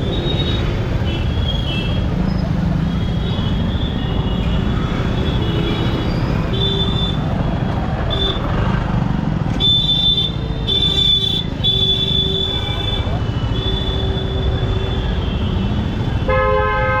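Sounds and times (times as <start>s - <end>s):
road rumble: 0.0s - 17.0s
wind: 0.0s - 17.0s
vehicle horn honking: 9.6s - 17.0s.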